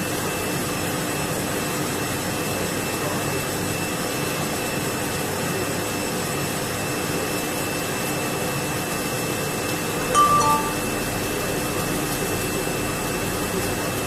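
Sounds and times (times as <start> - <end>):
short ringing tone: 10.2 - 11.0.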